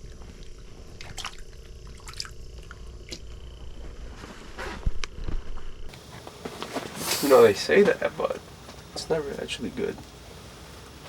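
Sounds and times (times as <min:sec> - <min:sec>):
steady low hum: 0:00.0 - 0:11.0
water drips and splashes: 0:01.0 - 0:03.2.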